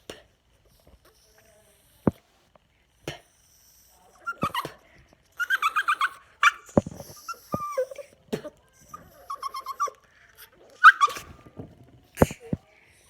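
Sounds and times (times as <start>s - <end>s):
small dog yipping and whining: 4.2s - 4.8s, 5.4s - 8.1s, 8.9s - 10.0s, 10.8s - 11.4s.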